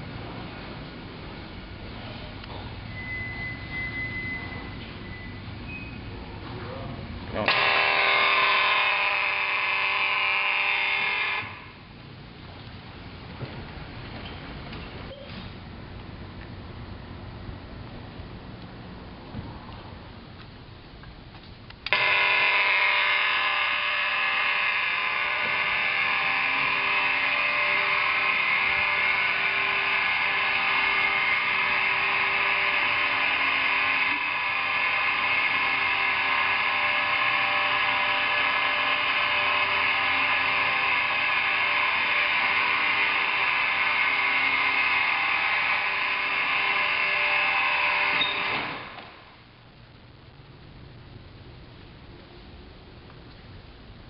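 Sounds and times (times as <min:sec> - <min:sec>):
garage door opener motor humming: 0:07.4 - 0:12.0, 0:21.8 - 0:49.5.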